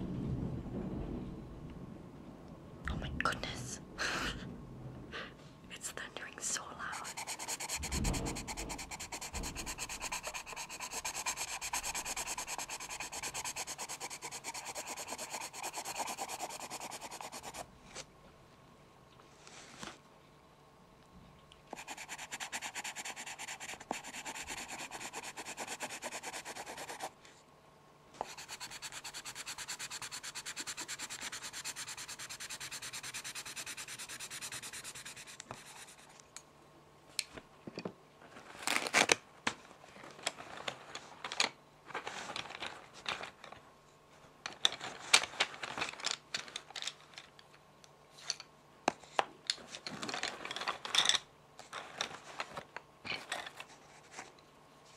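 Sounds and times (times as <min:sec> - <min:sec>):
pencil scratching: 0:06.9 - 0:17.6, 0:21.8 - 0:27.1, 0:28.2 - 0:36.1
pencils tapping and clicking: 0:06.9 - 0:17.6.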